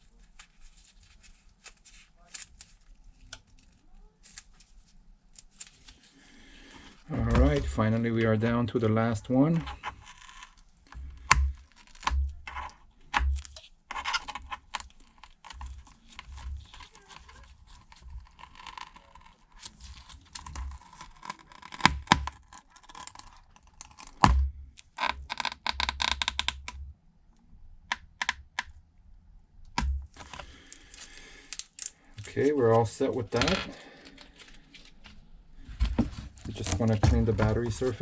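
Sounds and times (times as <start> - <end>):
adhesive crackling: 5.3 - 26.6, 29.7 - 35.2, 36.3 - 38.0.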